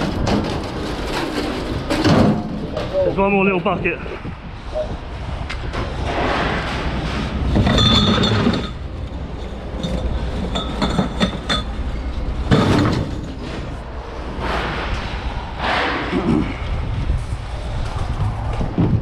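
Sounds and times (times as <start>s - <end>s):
scrap metal clattering: 0.0s - 3.0s, 5.8s - 14.8s.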